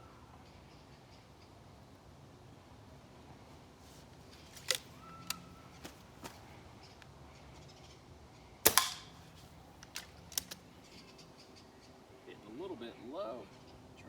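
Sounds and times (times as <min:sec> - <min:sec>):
air rifle handling clicks: 0:04.1 - 0:07.1, 0:08.7 - 0:11.1
air rifle shot: 0:08.6 - 0:09.2.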